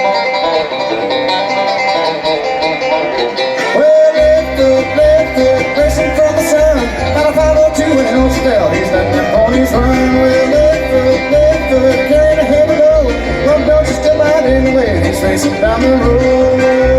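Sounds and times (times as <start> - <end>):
banjo picking: 0.0 - 16.9
bending melody line: 0.0 - 16.9
bluegrass band playing: 0.0 - 16.9
bass: 3.6 - 16.9.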